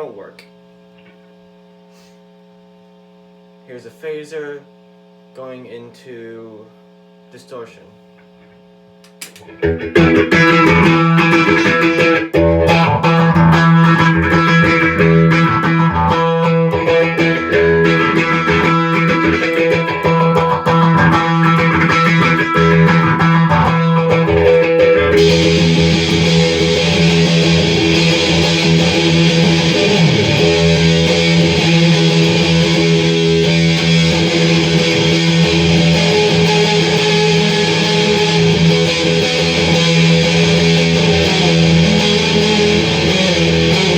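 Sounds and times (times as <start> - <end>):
distorted electric guitar: 9.1 - 43.9.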